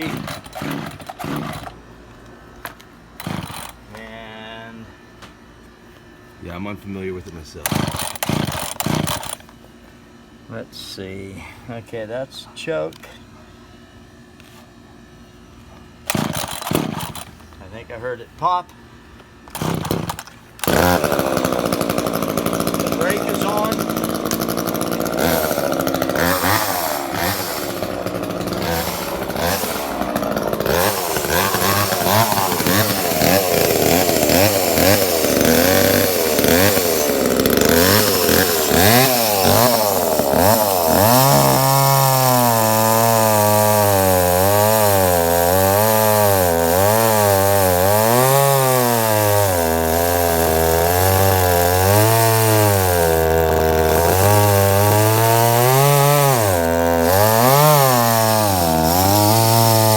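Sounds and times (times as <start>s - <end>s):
chainsaw revving and cutting wood: 0.0s - 1.8s, 3.2s - 4.1s, 7.6s - 9.5s, 16.1s - 18.6s, 19.5s - 59.9s.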